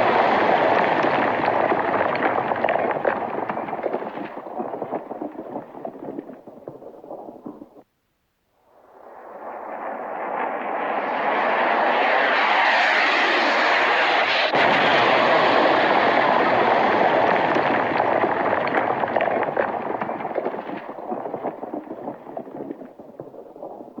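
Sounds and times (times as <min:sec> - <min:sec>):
explosion with crackling rumble: 0:00.0 - 0:07.8, 0:14.3 - 0:24.0
missile rushing flight noise: 0:08.8 - 0:20.3.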